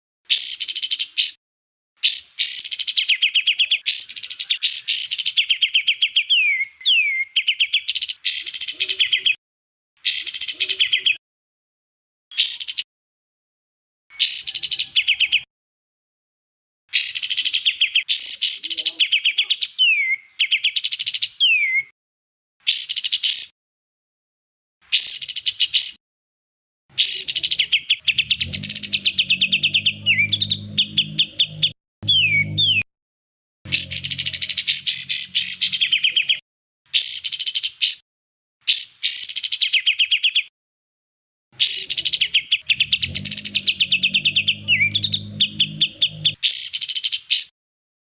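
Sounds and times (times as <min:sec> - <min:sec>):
low hum: 0:27.0 - 0:32.8, 0:33.7 - 0:36.4, 0:42.7 - 0:46.4
songbird high chirping: 0:27.0 - 0:32.8.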